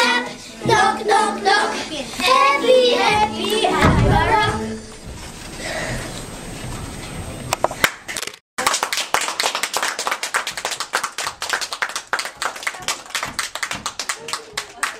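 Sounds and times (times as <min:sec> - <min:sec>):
audience clapping: 0:08.6 - 0:14.9.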